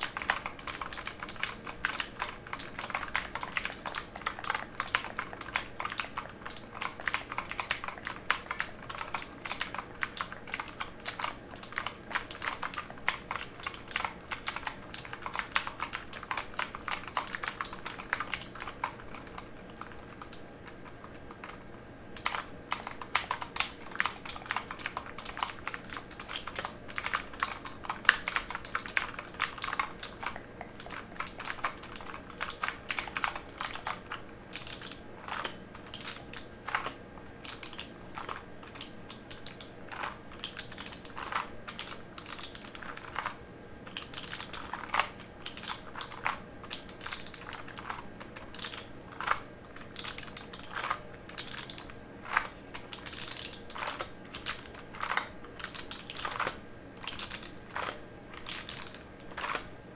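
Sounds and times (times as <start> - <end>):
mechanical keyboard typing: 0.0 - 59.7.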